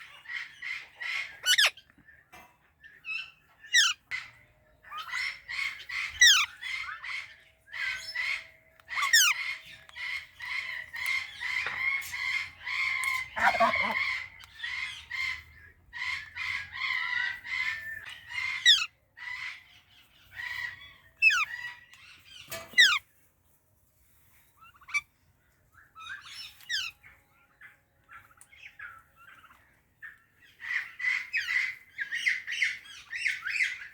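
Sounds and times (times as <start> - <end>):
parakeets chattering and screeching: 0.2 - 1.8, 3.7 - 19.6, 20.3 - 23.0.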